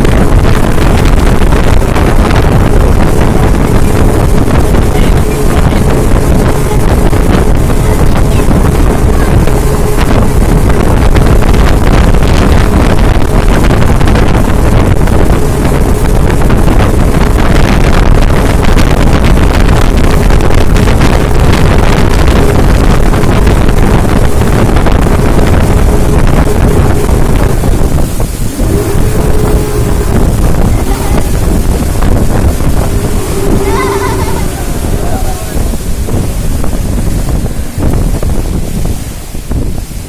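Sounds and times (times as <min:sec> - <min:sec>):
speedboat engine drone: 0:00.0 - 0:40.0
wind buffeting microphone: 0:00.0 - 0:40.0.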